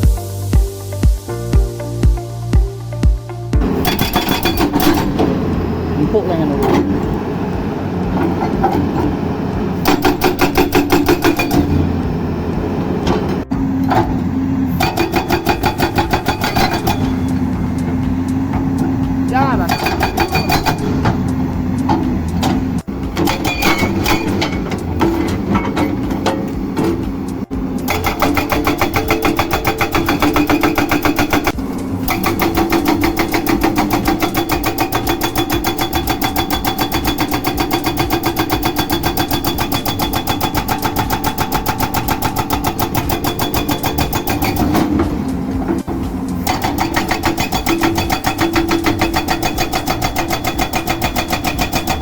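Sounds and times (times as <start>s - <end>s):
excavator engine running: 0.0s - 52.0s
hydraulic breaker hammering: 3.6s - 52.0s.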